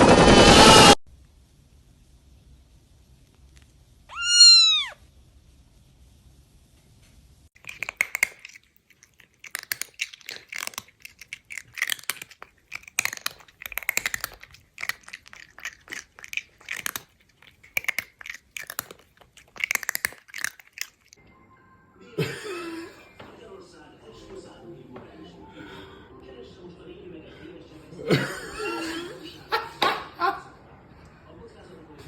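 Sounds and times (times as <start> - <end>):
cat crunching dry food: 7.6 - 21.2.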